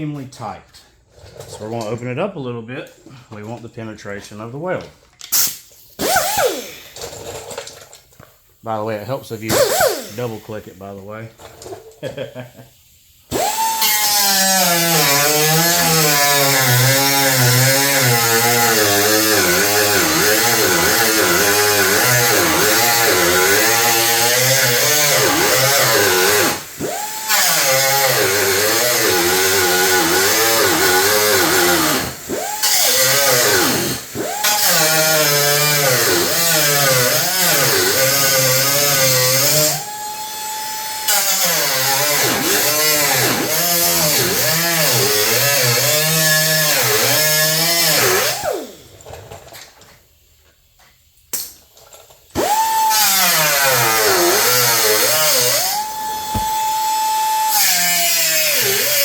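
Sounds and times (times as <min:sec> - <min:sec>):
cut-off tool cutting sheet metal: 0:13.4 - 0:39.9, 0:41.0 - 0:48.6, 0:52.4 - 0:59.0.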